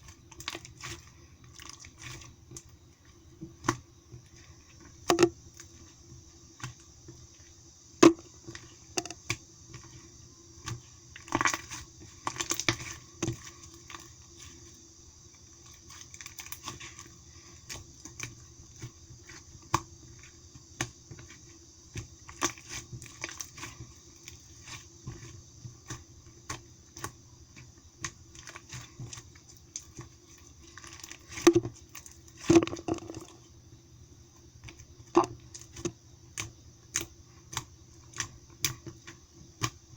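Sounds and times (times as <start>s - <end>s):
faint steady hum: 0.0s - 39.9s
slime clicking and popping: 32.5s - 33.4s.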